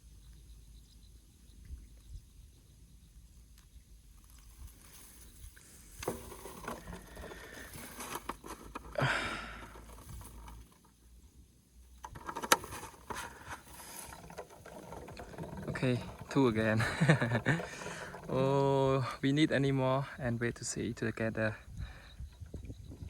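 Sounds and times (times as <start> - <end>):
rustling and scraping: 4.2 - 11.0, 12.0 - 19.2.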